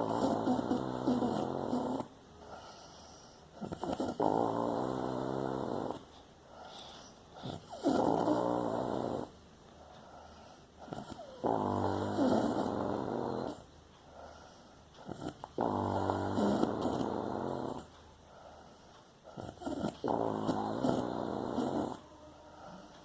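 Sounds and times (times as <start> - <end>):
loud rasping snores: 0.0 - 2.9, 3.5 - 6.1, 7.4 - 9.4, 10.8 - 13.7, 15.0 - 17.9, 19.3 - 22.8
quiet breaths: 0.0 - 23.0.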